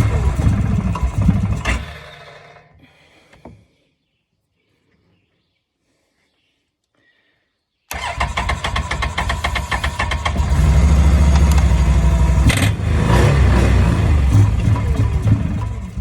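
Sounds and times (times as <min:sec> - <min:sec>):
engine cranking and starting: 0:00.0 - 0:02.8, 0:07.9 - 0:16.0.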